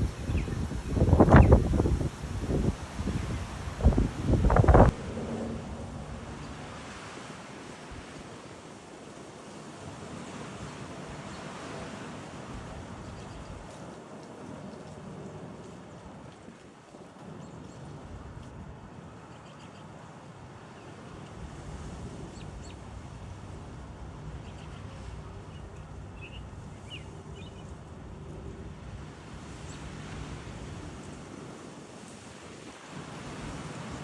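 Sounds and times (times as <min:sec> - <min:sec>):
steady rushing noise: 0:00.0 - 0:16.7.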